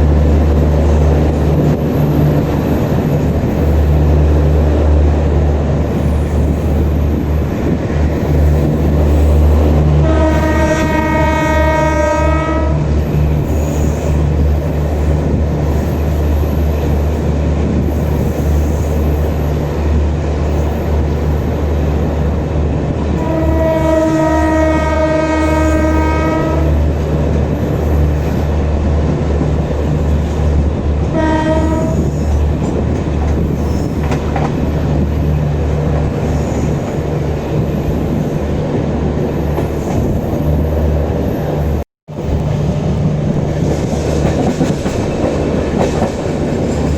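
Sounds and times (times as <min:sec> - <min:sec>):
train rumble and clatter: 0:00.0 - 0:46.9
locomotive horn: 0:10.0 - 0:12.9, 0:23.2 - 0:26.8, 0:31.1 - 0:32.2.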